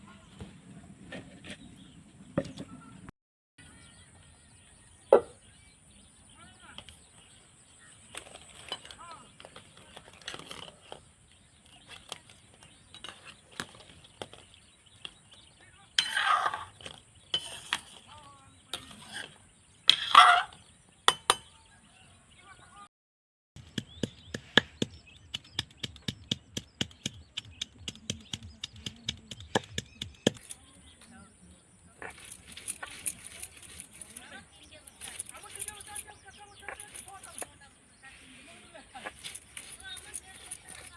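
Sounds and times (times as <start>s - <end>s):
kitchen utensils clinking: 8.1s - 11.0s, 16.0s - 18.1s, 18.7s - 21.5s, 32.0s - 37.6s, 39.0s - 40.9s.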